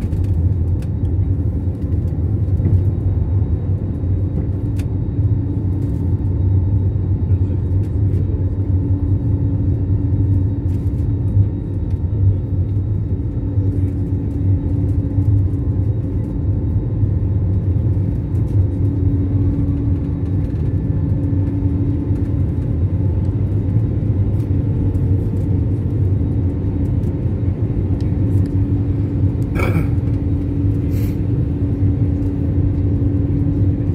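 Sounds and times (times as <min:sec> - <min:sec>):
jet engines rumbling in cabin: 0:00.0 - 0:33.9.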